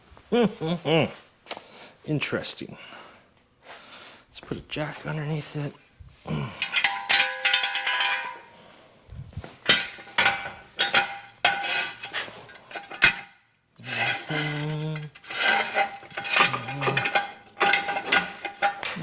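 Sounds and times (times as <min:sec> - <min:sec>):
metal tools clanking: 0:06.4 - 0:08.6, 0:09.5 - 0:19.0
metallic ring: 0:06.6 - 0:08.6.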